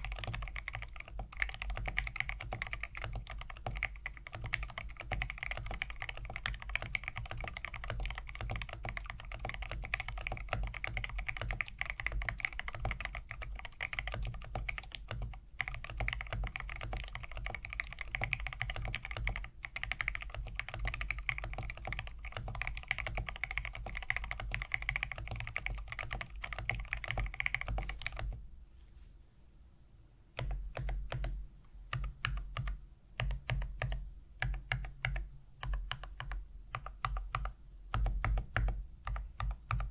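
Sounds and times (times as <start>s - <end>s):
typing on mechanical keyboard: 0.0s - 28.4s, 30.4s - 39.9s.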